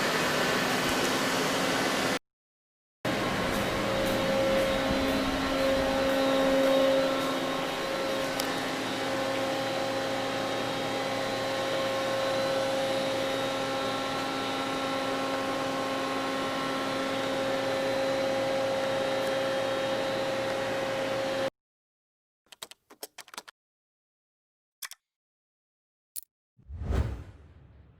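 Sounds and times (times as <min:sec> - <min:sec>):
high machine whine: 0:03.1 - 0:14.7
lathe machine hum: 0:03.1 - 0:17.6.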